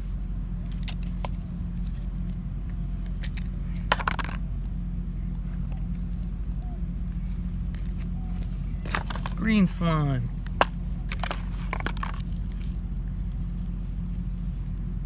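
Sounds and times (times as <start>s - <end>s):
steady low hum: 0.0s - 15.0s
plastic toys clicking: 3.3s - 4.4s, 10.4s - 12.3s.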